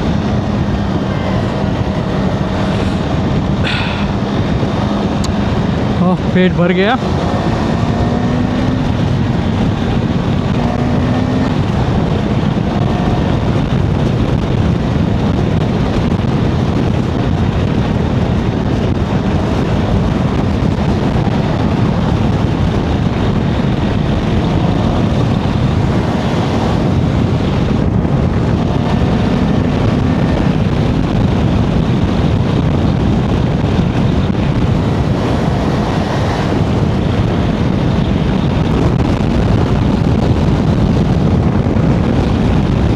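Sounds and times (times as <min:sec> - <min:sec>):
faint motorcycle engine hum: 0:00.0 - 0:42.9
wind rush on microphone: 0:00.0 - 0:42.9.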